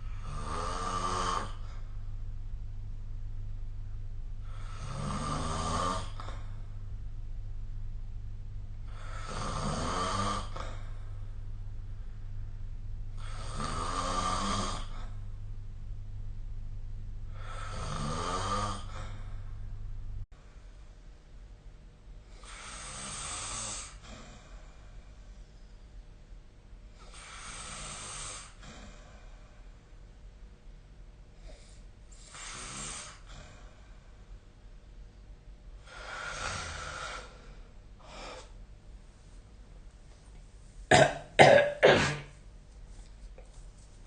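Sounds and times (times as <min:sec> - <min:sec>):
person snoring: 0:00.0 - 0:01.9, 0:04.4 - 0:06.6, 0:08.9 - 0:11.0, 0:13.2 - 0:15.2, 0:17.3 - 0:19.4, 0:22.4 - 0:24.2, 0:35.8 - 0:38.5
person coughing: 0:40.9 - 0:42.3.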